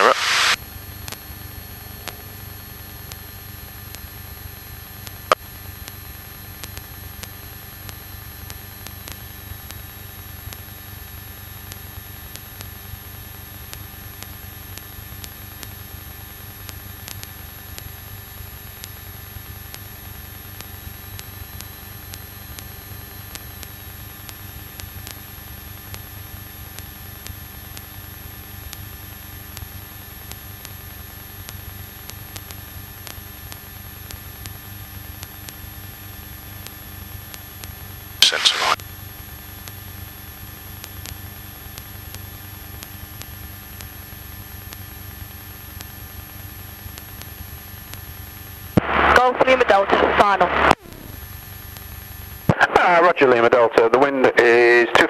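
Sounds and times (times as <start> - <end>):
intercom hiss and hum: 0.0 - 0.6, 38.2 - 38.8, 48.8 - 51.5, 52.5 - 55.0.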